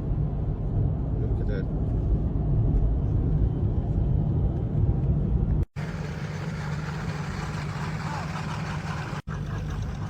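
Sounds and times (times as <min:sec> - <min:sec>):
steady engine hum: 0:00.0 - 0:10.0
boat engine uneven rumble: 0:05.8 - 0:10.0.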